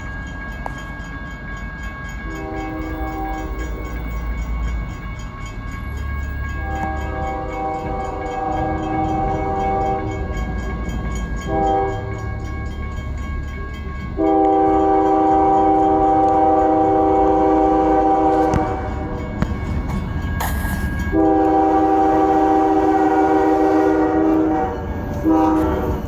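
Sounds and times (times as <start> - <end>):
train rumble: 0.0 - 26.0
locomotive air horn: 2.3 - 3.6, 6.6 - 10.2, 11.5 - 12.2, 14.2 - 26.0.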